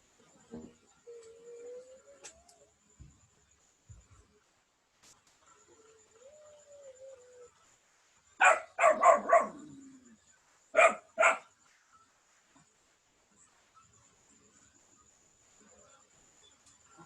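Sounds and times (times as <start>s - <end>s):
dog barking: 8.4s - 9.7s, 10.8s - 11.5s.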